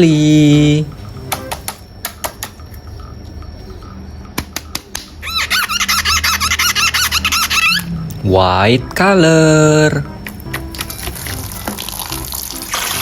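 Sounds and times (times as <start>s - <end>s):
fast high chirps: 5.1s - 9.0s.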